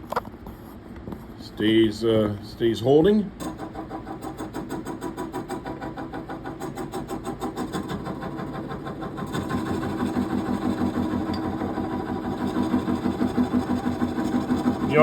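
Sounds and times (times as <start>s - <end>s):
wood lathe spinning: 3.4s - 15.0s
drill bit boring into wood: 9.2s - 15.0s.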